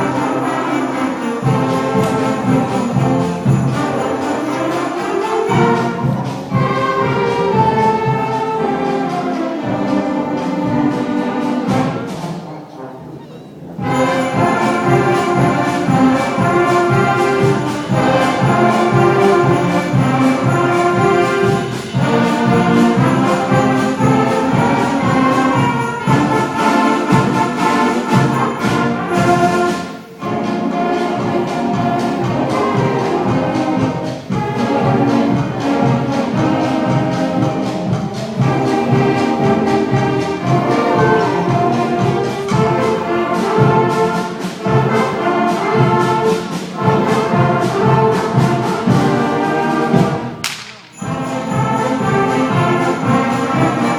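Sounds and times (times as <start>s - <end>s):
sleigh bells jingling: 0.0s - 6.8s, 13.8s - 30.2s, 50.2s - 53.9s
school band playing: 0.0s - 53.9s.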